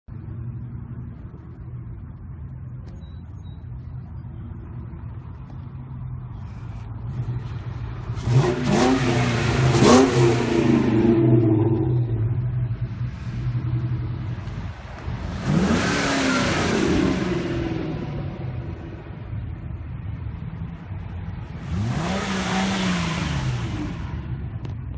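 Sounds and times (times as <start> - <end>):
car engines idling: 0.1 - 24.9
car revving and accelerating away: 8.0 - 12.5, 15.2 - 18.3, 21.6 - 24.3.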